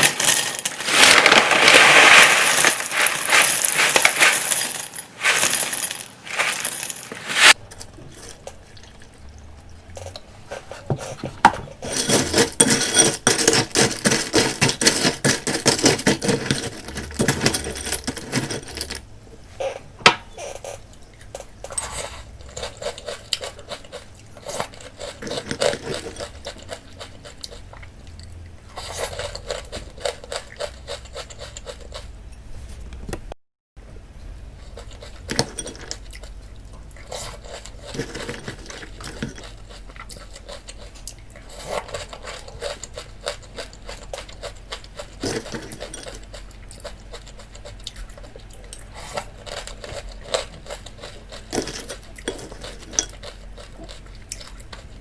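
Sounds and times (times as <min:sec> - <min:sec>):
crunchy chewing: 0:20.4 - 0:32.2, 0:34.6 - 0:55.0.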